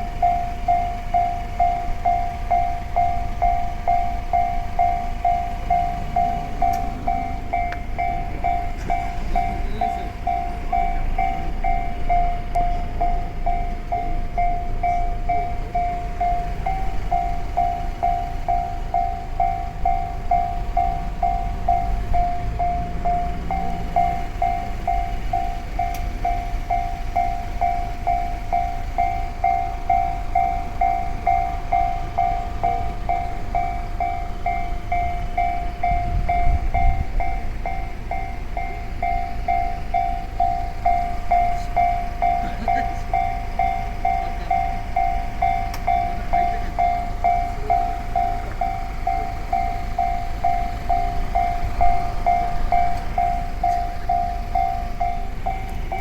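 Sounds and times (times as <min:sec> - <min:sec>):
level-crossing alarm ringing: 0:00.0 - 0:56.0
train rumbling past: 0:00.0 - 0:56.0.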